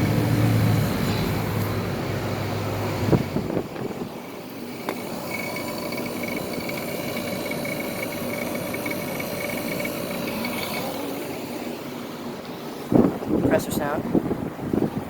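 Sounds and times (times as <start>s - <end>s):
compressor humming: 0.0s - 14.1s
steady tones: 4.4s - 12.5s
thin high whine: 4.7s - 11.9s.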